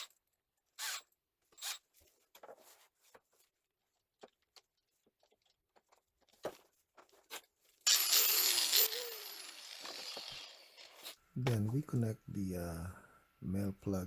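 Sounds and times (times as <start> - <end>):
power tool motor whining: 7.9 - 11.1.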